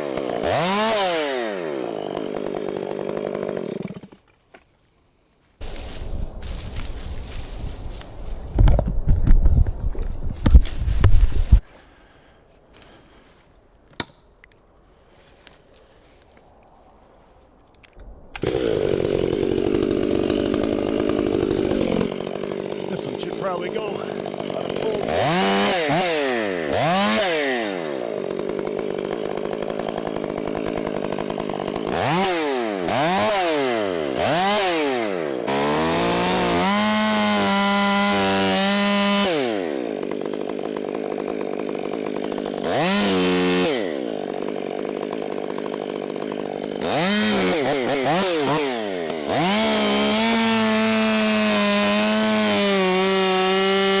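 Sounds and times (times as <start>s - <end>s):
chainsaw engine revving: 0.0s - 4.2s, 18.4s - 54.0s.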